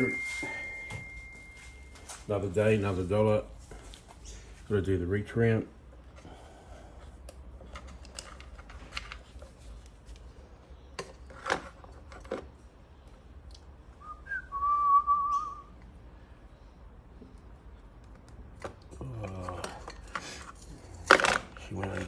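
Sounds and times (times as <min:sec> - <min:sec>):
person whistling: 0:00.0 - 0:01.6, 0:14.0 - 0:15.7
hands handling parts: 0:05.9 - 0:13.2, 0:17.2 - 0:22.0.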